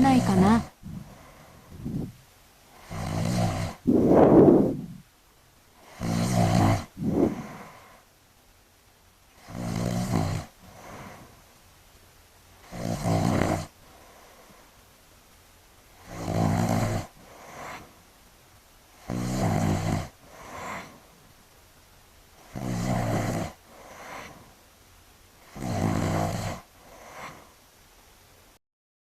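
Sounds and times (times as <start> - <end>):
man snoring loudly: 2.8 - 5.0, 5.8 - 7.8, 9.4 - 11.3, 12.6 - 13.8, 16.0 - 17.9, 19.0 - 21.0, 22.5 - 24.4, 25.5 - 27.5.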